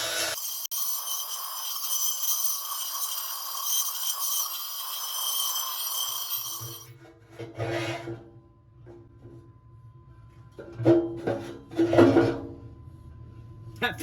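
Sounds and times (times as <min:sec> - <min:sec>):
metal scraping against metal: 0:00.2 - 0:08.2.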